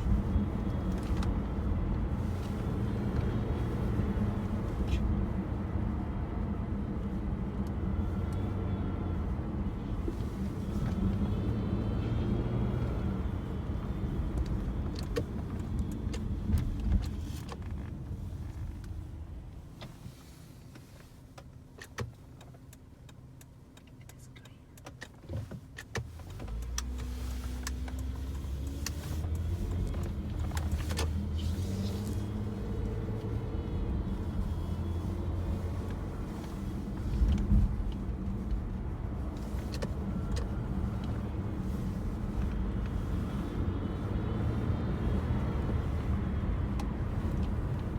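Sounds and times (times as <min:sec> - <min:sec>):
car engine running: 0:26.1 - 0:47.9.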